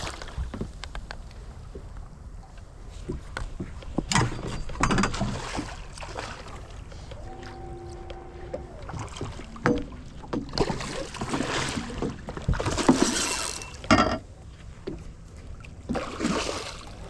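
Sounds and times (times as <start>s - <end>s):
water splashing: 4.9s - 13.9s, 15.6s - 17.0s.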